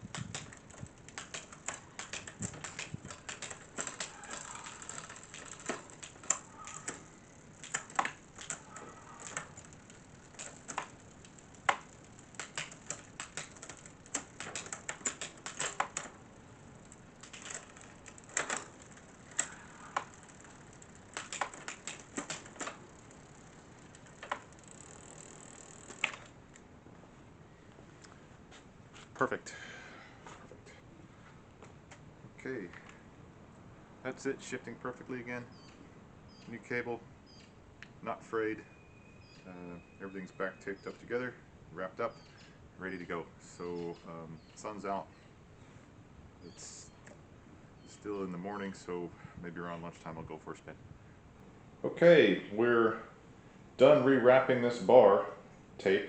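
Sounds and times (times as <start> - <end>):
bicycle shifter clicks: 0.0 - 16.2, 16.8 - 26.4.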